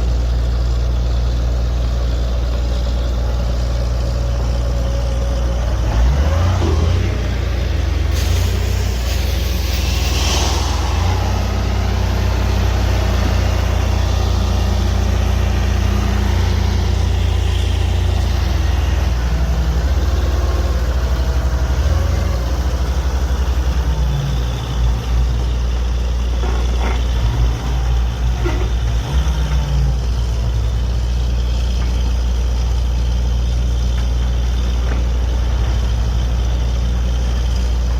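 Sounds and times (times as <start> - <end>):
drilling rig engine droning: 2.2 - 37.9.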